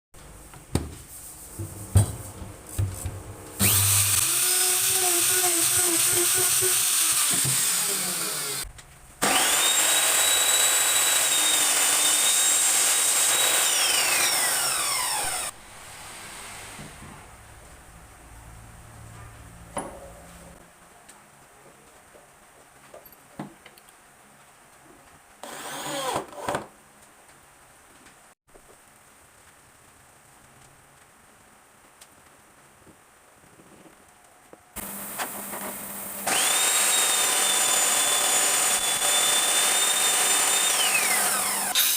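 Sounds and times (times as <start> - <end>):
wooden knocks and clunks: 0.6 - 3.4
power tool running: 2.8 - 16.9, 25.4 - 26.5, 34.8 - 41.9.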